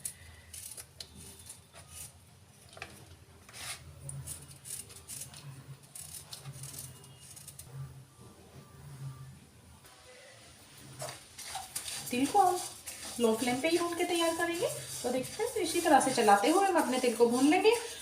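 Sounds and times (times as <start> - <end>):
knife cutting and scraping: 3.5 - 7.8, 11.0 - 18.0.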